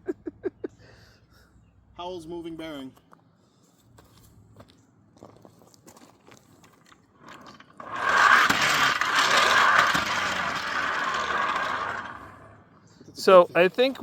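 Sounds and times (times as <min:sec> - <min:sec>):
howling bearing: 0:07.2 - 0:12.6
metallic grinding and scraping: 0:07.2 - 0:12.7.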